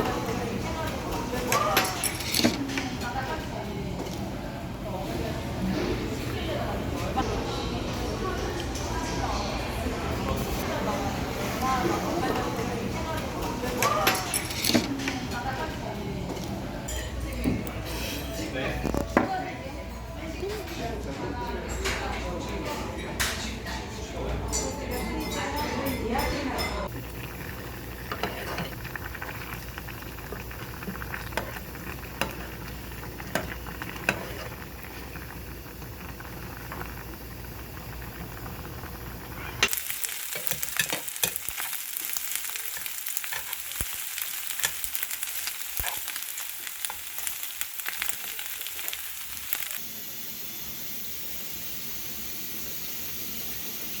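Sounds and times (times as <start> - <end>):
food sizzling in a pan: 26.6 - 54.0.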